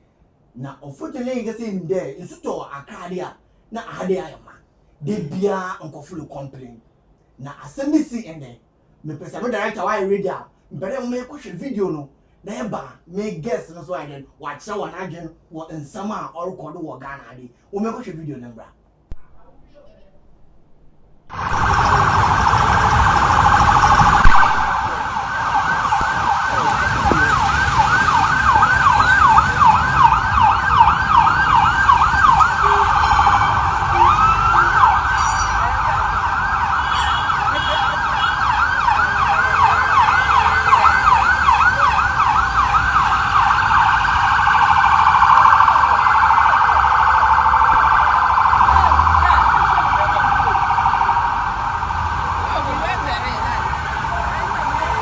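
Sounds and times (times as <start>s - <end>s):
low rumble of vehicles: 19.1s - 55.0s
sirens wailing: 21.3s - 55.0s.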